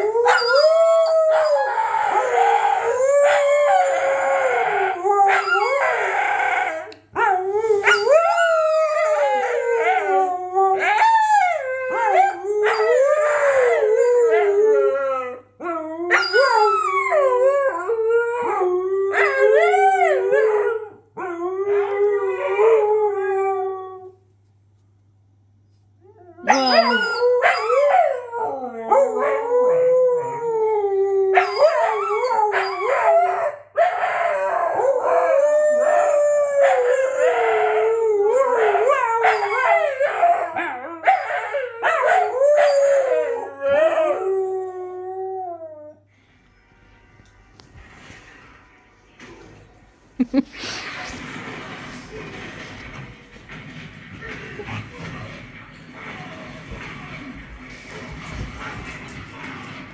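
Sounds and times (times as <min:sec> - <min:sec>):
huskies howling: 0:00.0 - 0:24.0.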